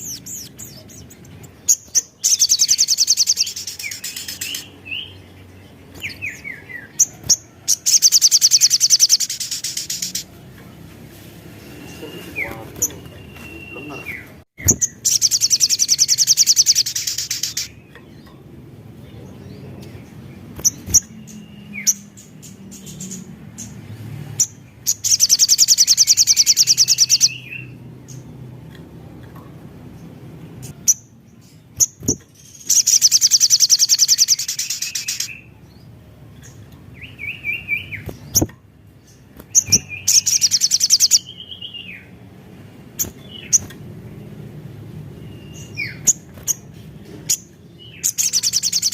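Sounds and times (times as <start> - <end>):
bird sharp chips: 0.0 - 5.2, 5.8 - 10.3, 11.6 - 18.4, 19.8 - 23.7, 30.6 - 35.4, 36.4 - 42.1, 42.9 - 43.8, 45.4 - 48.9
bird high-pitched trills: 0.0 - 10.3, 11.6 - 18.5, 24.9 - 27.8, 30.7 - 35.5, 39.4 - 42.1, 47.3 - 48.9.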